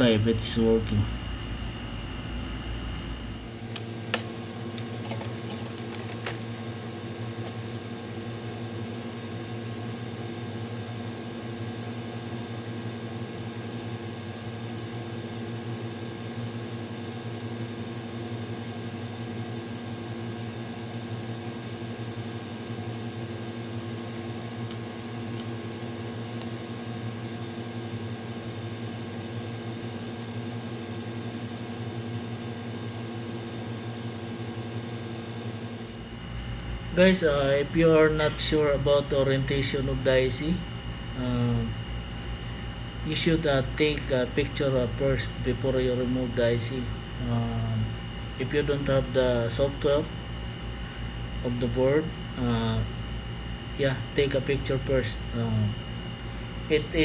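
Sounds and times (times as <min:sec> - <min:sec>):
faint high whine: 0:00.0 - 0:29.4, 0:31.3 - 0:57.0
electrical hum: 0:00.0 - 0:57.0
sharp click: 0:03.7 - 0:06.4, 0:38.2 - 0:38.5.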